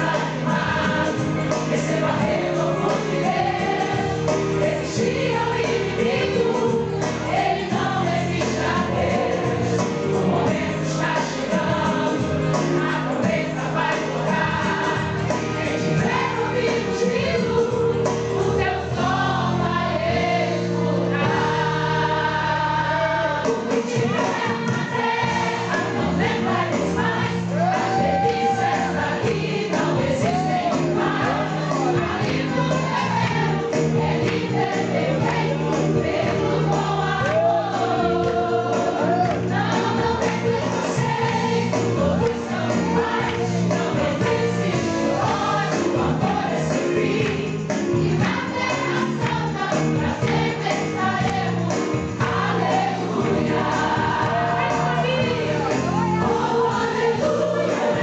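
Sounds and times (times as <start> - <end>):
band accompaniment: 0.0 - 58.0
choir singing gospel song: 0.0 - 58.0.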